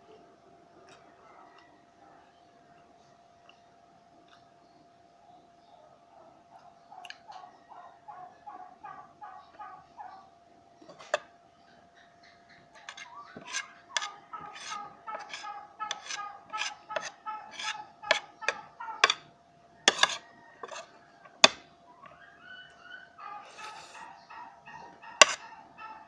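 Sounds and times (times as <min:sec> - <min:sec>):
cutlery clinking on a plate: 0:10.9 - 0:11.3, 0:12.8 - 0:19.2, 0:19.9 - 0:21.6.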